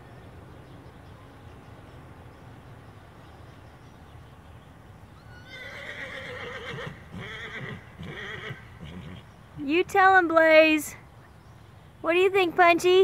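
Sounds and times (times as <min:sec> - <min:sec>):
horse whinnying loudly: 0:05.3 - 0:09.2.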